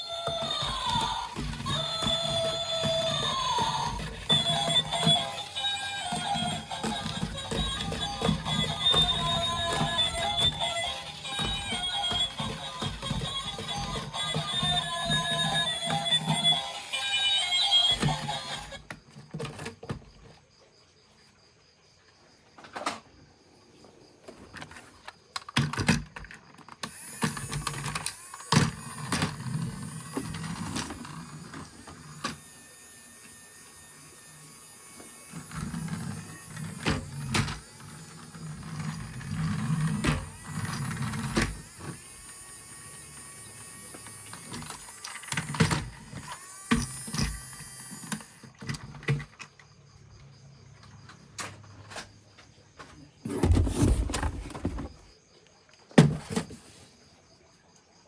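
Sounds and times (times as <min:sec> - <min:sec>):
small electric motor whirring: 0:00.0 - 0:18.8, 0:26.8 - 0:48.7.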